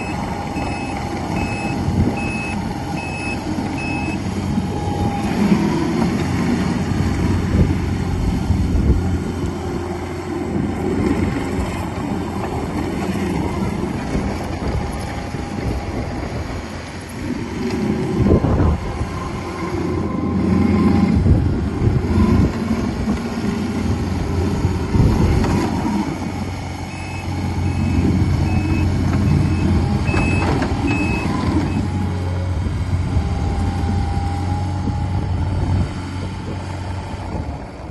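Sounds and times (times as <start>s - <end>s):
backup alarm beeping: 0.0s - 4.2s, 26.9s - 31.8s
diesel engine running: 0.0s - 37.9s.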